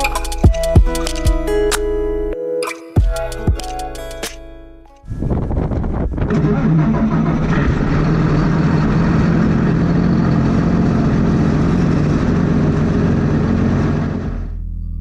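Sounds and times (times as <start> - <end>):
heavy farm machine engine: 5.1 - 14.6.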